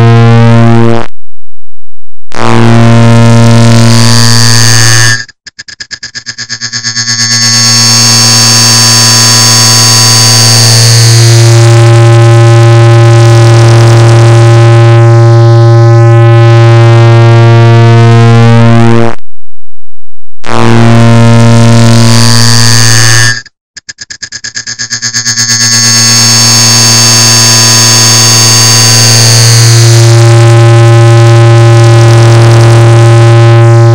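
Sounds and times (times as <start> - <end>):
distorted buzzing clock drone: 0.0 - 1.0, 2.3 - 19.0, 20.4 - 33.9.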